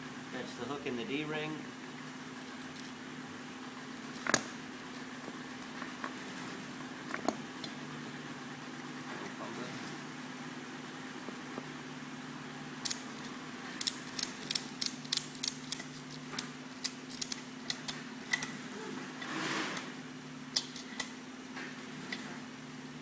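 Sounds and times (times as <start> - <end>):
steady low hum: 0.0 - 23.0
metal ratchet clicks and clinks: 12.8 - 18.5.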